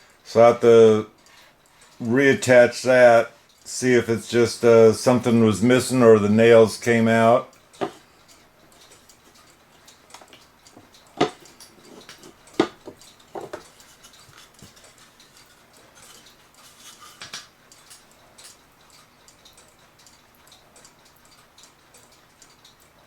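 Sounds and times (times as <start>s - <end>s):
sharp knocks: 11.2s - 11.4s.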